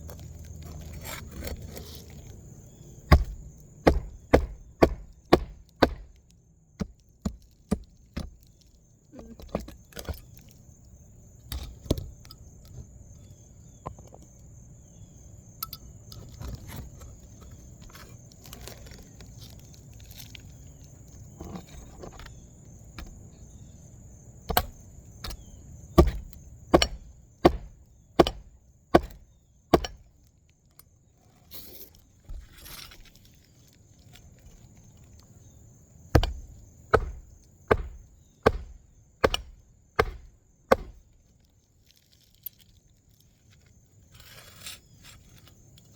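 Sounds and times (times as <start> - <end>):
hammer blows on roof: 3.1 - 6.2, 26.0 - 30.0, 36.2 - 41.0.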